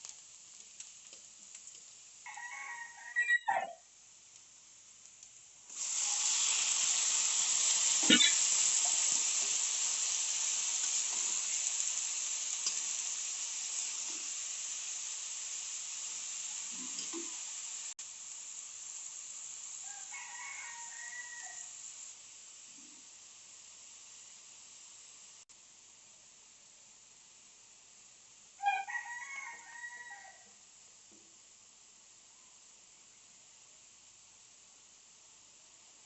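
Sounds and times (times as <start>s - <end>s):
food sizzling in hot oil: 0.0s - 36.0s
rooster crowing: 2.3s - 3.8s, 19.8s - 21.8s, 28.6s - 30.6s.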